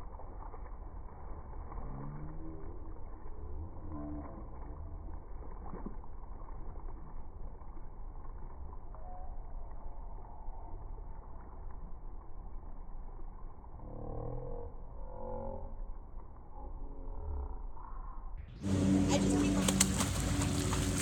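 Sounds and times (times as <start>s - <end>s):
low rumble: 0.0s - 21.0s
water sloshing and splashing: 18.6s - 21.0s.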